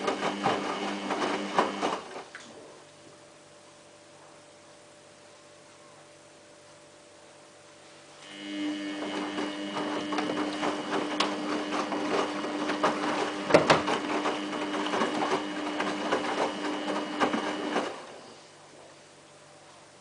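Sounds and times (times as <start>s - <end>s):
washing machine motor whine: 0.0s - 2.7s, 8.2s - 19.0s
laundry tumbling knocks: 9.4s - 17.9s.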